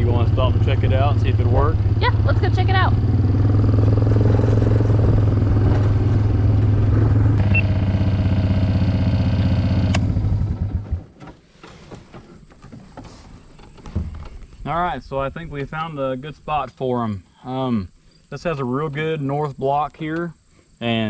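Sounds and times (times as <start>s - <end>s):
vehicle engine running: 0.0s - 11.1s.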